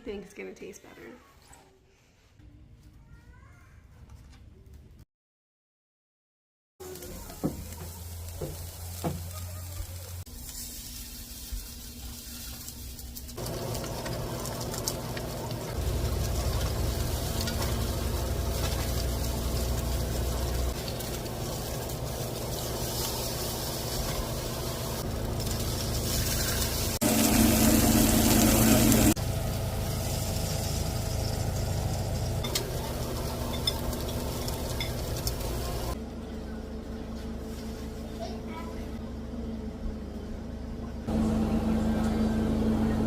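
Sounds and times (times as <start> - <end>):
steaks sizzling: 6.9 - 36.0.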